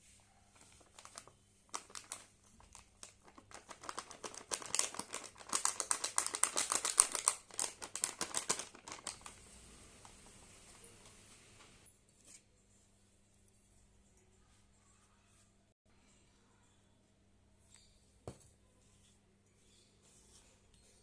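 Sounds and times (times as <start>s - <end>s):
plastic packet crinkling: 0.8s - 9.5s.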